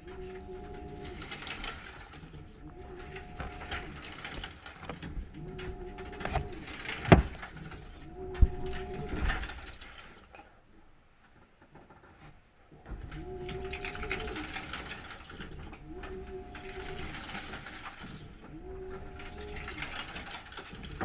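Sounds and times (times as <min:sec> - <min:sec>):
washing machine motor hum: 0:00.0 - 0:10.2, 0:12.7 - 0:21.0.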